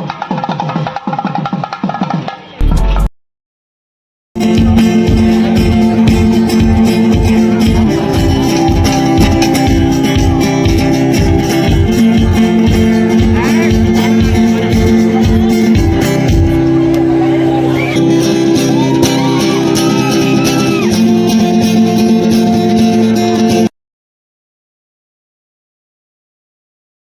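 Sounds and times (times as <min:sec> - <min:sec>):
background music with fast beat: 0:04.4 - 0:23.6.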